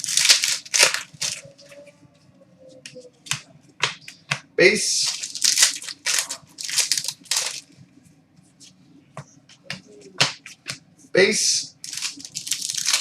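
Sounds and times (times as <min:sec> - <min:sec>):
card wrapper rustling: 0:00.0 - 0:01.6, 0:05.0 - 0:07.7, 0:11.7 - 0:13.0.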